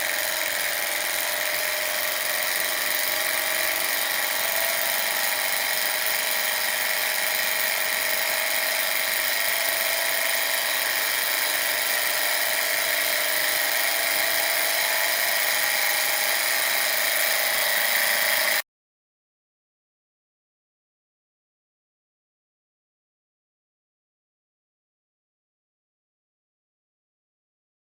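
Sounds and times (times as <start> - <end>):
small motor whirring: 0.0 - 18.6.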